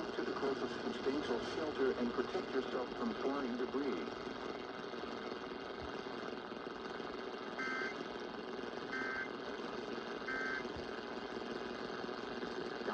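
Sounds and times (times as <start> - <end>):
radio hiss: 0.0 - 12.9
buzzy data tones: 7.6 - 8.0, 8.9 - 9.3, 10.2 - 10.7.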